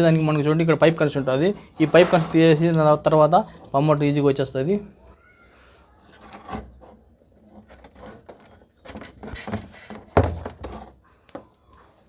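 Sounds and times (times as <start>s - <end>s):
handling clicks and rustling: 0.0s - 4.3s.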